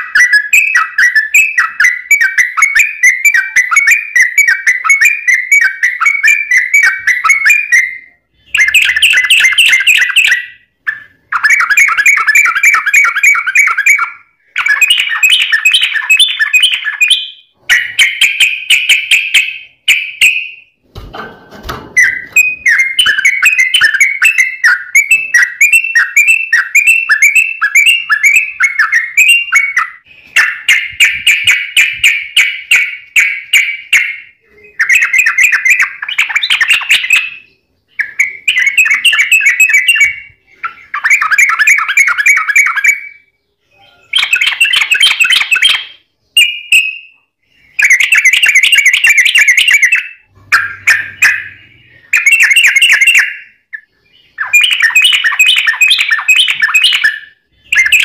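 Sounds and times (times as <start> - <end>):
bulbul rapid warbling song: 47.7 - 58.0.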